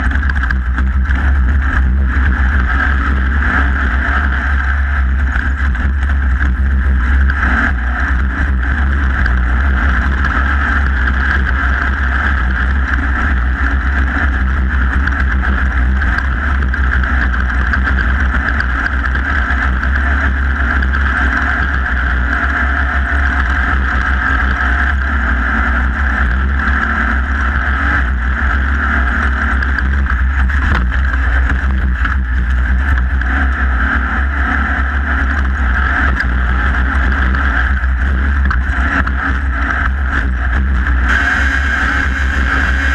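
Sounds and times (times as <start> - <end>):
race vehicle engine running loud: 0.0 - 42.9
rushing noise: 0.0 - 42.9.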